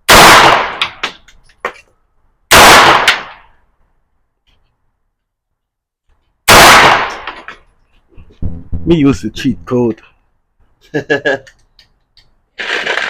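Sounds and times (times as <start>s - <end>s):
gunshots: 0.1s - 1.0s, 2.5s - 3.4s, 6.5s - 7.4s.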